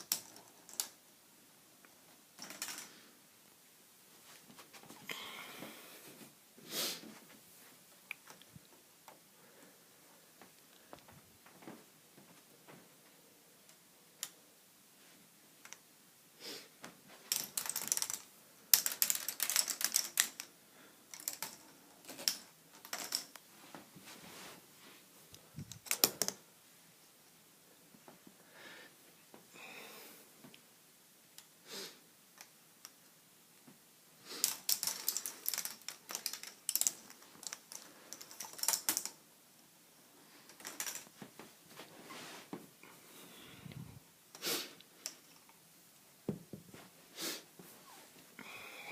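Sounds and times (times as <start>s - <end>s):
balls clattering through plastic tracks: 2.4s - 3.0s, 17.3s - 20.5s, 21.1s - 23.4s, 34.4s - 39.2s, 40.5s - 41.2s.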